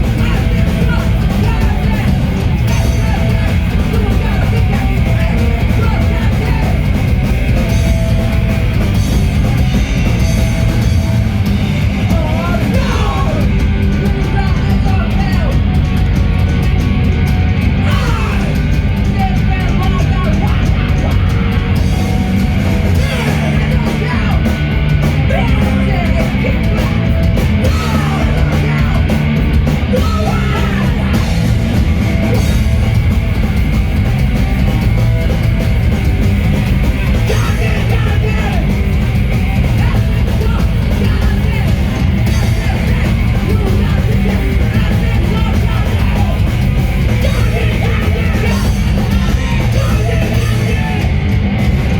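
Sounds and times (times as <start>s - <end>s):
punk rock band music: 0.0s - 51.9s
person yelling vocals: 12.1s - 13.5s, 17.8s - 21.3s, 29.8s - 31.3s.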